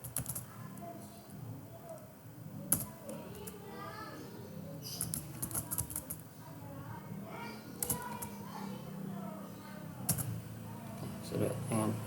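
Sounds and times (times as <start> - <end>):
faint low speech: 0.3 - 12.0
keyboard keystrokes: 5.0 - 6.2, 7.8 - 8.3, 10.1 - 10.3.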